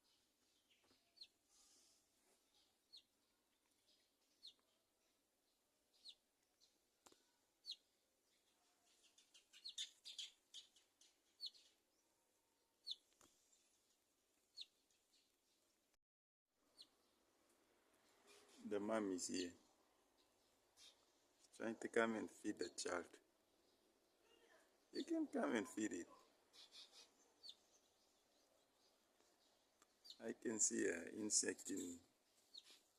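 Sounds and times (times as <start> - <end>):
small bird chirping: 0.0 - 15.8, 16.6 - 32.9.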